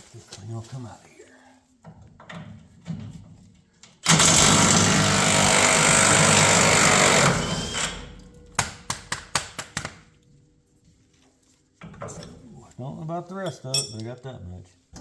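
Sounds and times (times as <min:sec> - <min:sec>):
impact wrench hammering: 0:04.1 - 0:10.1.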